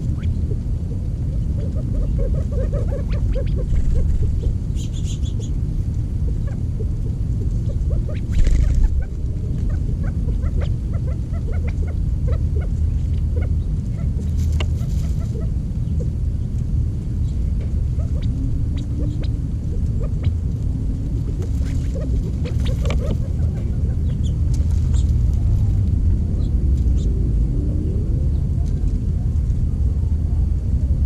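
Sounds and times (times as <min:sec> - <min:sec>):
low microphone rumble: 0:00.0 - 0:31.0
birds pecking ticks and taps: 0:14.2 - 0:15.0, 0:21.3 - 0:23.6.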